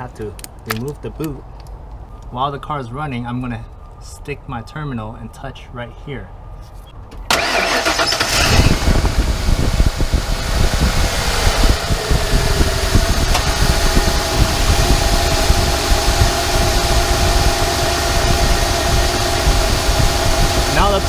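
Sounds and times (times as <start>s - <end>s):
car engine idling: 7.3s - 21.0s.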